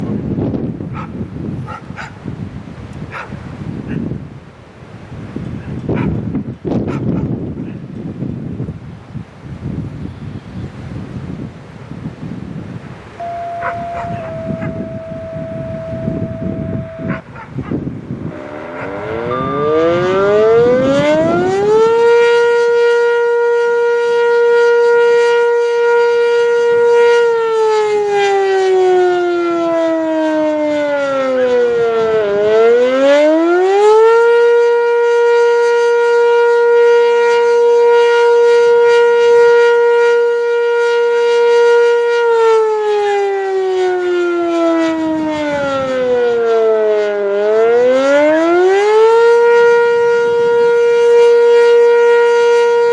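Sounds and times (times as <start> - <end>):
warning siren rising and falling: 13.1 - 52.9.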